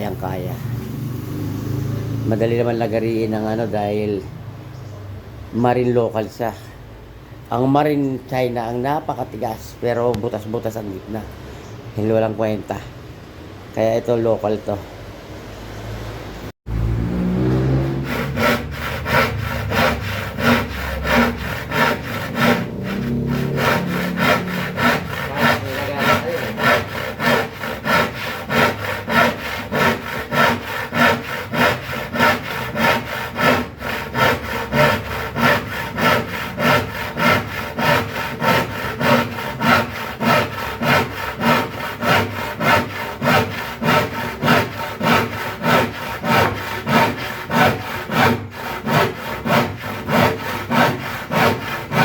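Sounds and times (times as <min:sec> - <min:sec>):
hand saw cutting plywood: 0:17.4 - 0:52.0.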